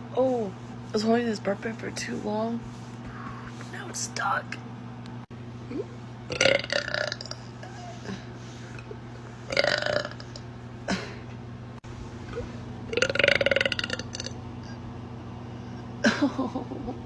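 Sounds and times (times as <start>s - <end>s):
woman burping: 5.7s - 8.3s, 9.5s - 11.2s, 12.9s - 14.8s.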